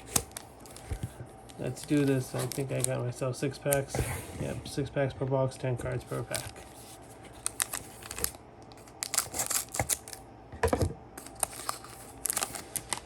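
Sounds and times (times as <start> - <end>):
foil packs crinkling: 0.0 - 3.1, 5.9 - 10.2, 11.2 - 13.0.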